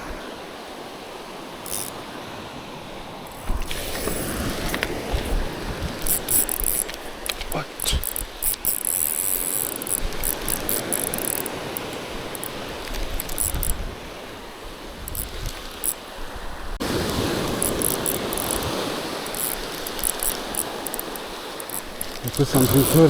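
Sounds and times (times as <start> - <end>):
fishing reel clicking: 1.6 - 2.0, 3.3 - 13.9, 15.0 - 16.0, 16.8 - 23.0.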